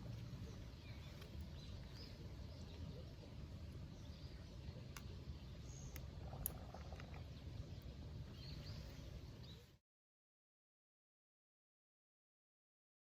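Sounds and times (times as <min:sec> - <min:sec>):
low steady rumble: 0:00.0 - 0:09.7.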